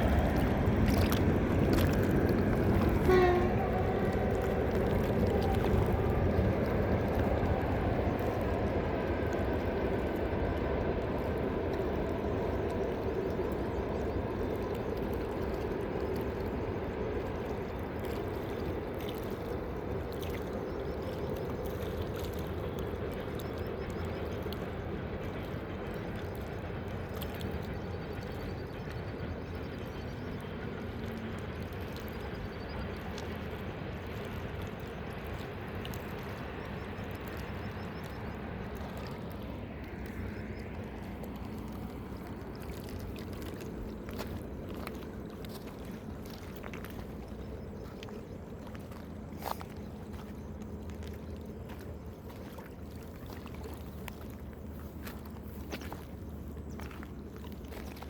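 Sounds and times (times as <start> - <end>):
flowing water rushing: 0.0 - 58.0.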